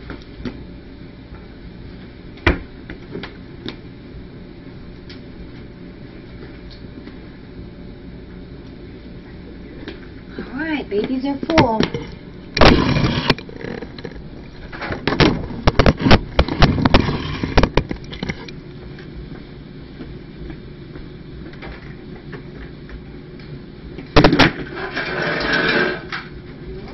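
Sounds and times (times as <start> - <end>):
objects knocking and clattering: 12.6 - 18.5.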